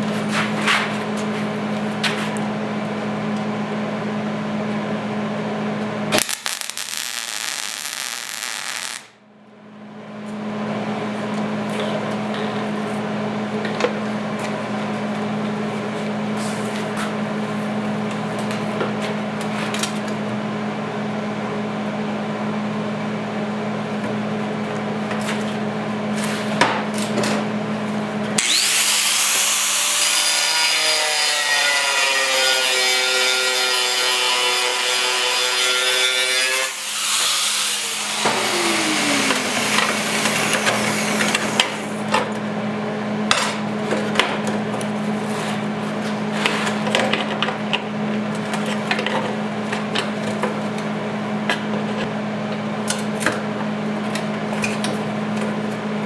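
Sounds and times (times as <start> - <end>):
steady hum: 6.0 - 9.7
rotary cutting tool on metal: 28.4 - 41.7.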